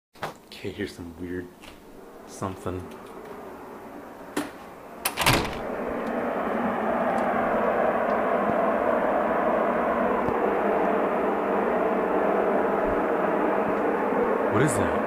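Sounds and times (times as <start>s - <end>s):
loud steady outdoor noise: 0.2s - 15.0s
door clicking open: 4.4s - 5.7s.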